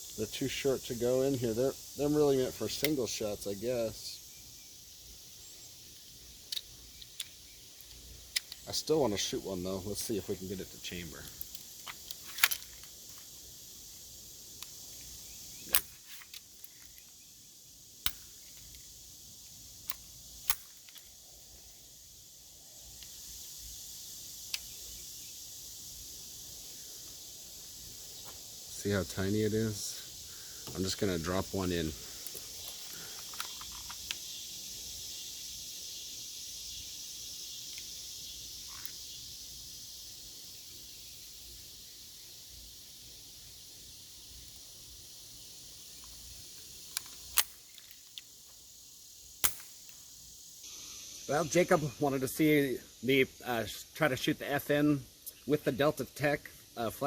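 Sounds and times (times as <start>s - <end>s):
steady high hiss: 0.0s - 57.0s
pistol action clicking: 15.7s - 17.1s, 18.0s - 18.7s, 19.8s - 21.1s, 46.9s - 48.3s, 49.4s - 50.0s.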